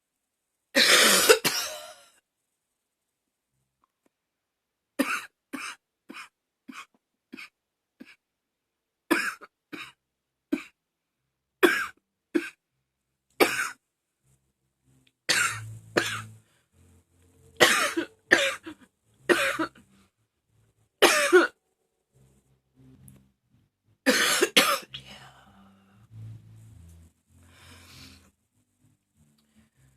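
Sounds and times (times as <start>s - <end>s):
woman coughing: 0.8s - 2.0s, 17.6s - 19.8s, 21.0s - 21.6s, 24.1s - 25.0s.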